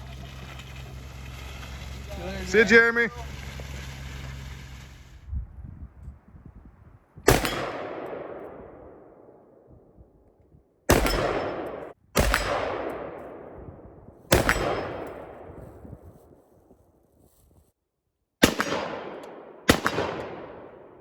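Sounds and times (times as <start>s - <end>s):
gunshots with echo: 7.3s - 9.4s, 10.9s - 15.8s, 18.4s - 21.0s.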